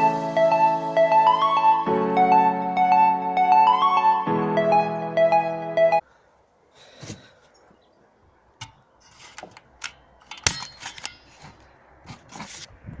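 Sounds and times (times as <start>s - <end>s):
piano music: 0.0s - 6.0s.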